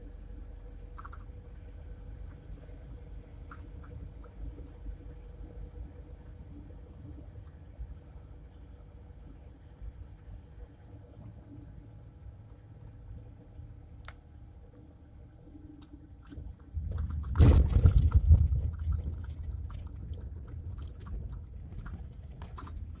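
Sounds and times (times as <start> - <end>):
suspension knocking and clicking: 15.8 - 23.0
low rumble: 16.4 - 23.0.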